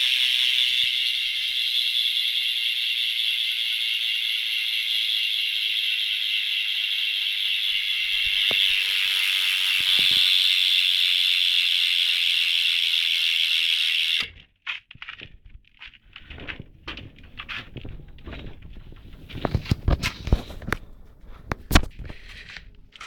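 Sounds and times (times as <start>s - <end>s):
bicycle hub ratcheting buzz: 0.0s - 14.3s.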